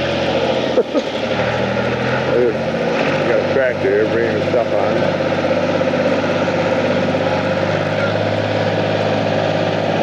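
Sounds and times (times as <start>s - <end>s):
tractor engine idling: 0.0s - 10.0s.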